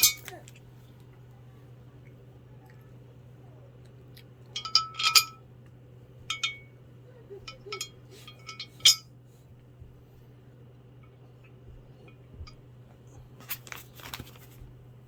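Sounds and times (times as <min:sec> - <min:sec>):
bolts clinking against metal: 0:00.0 - 0:00.4, 0:04.5 - 0:05.4, 0:06.3 - 0:06.7, 0:07.4 - 0:09.0.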